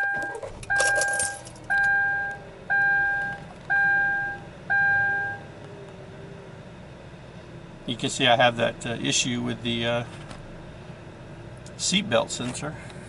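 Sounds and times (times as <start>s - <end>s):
two-tone seat belt chime: 0.0s - 5.4s
car engine idling: 0.0s - 13.0s.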